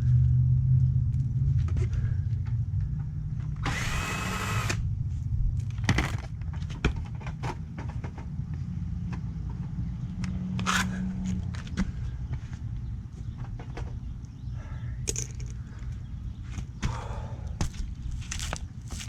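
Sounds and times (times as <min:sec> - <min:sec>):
steady low hum: 0:00.0 - 0:19.0
mechanical whir: 0:03.6 - 0:04.9.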